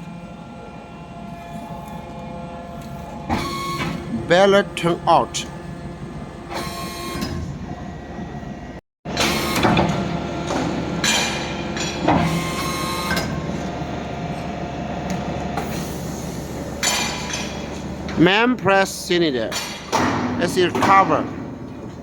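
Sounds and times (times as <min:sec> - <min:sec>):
hydraulic pump humming: 0:00.0 - 0:22.0
loud metal clanks: 0:09.2 - 0:12.5, 0:19.4 - 0:21.9.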